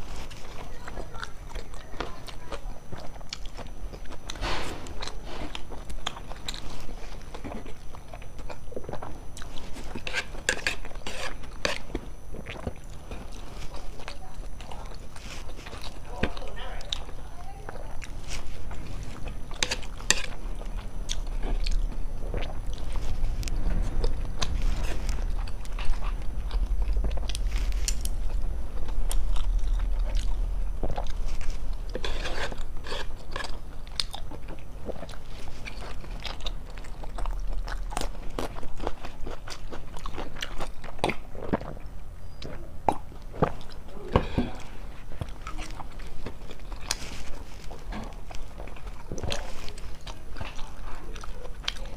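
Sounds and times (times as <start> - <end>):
person chewing and smacking: 0.0 - 51.9
low rumble: 16.9 - 40.9.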